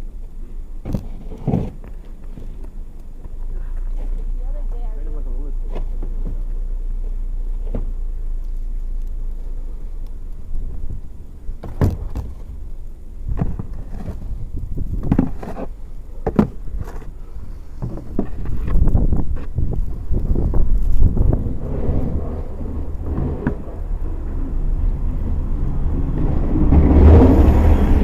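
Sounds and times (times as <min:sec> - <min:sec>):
wind on microphone: 0:13.2 - 0:15.5, 0:17.4 - 0:28.0
snow shovel scraping and knocking: 0:13.3 - 0:19.6.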